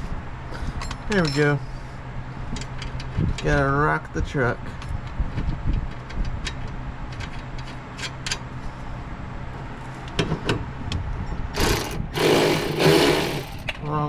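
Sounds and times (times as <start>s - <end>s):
steady low hum: 0.0s - 14.0s
metal clicks and knocks: 5.0s - 8.5s
loud scraping rushes: 11.5s - 13.7s.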